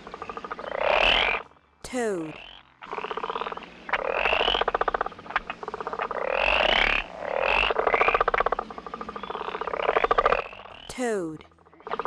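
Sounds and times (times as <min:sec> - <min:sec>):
toads trilling in chorus: 0:02.4 - 0:10.7.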